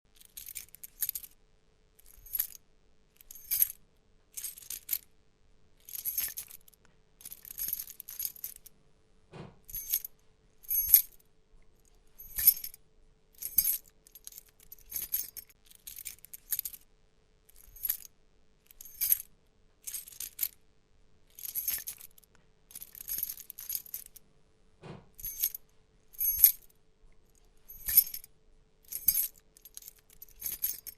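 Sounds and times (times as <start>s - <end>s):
keys jangling on a keychain: 0.1s - 1.4s, 2.0s - 2.6s, 3.2s - 3.8s, 4.4s - 5.0s, 5.8s - 8.7s, 9.6s - 11.2s, 12.1s - 12.8s, 13.4s - 16.8s, 17.5s - 18.1s, 18.7s - 20.6s, 21.3s - 24.2s, 25.1s - 26.7s, 27.3s - 30.9s.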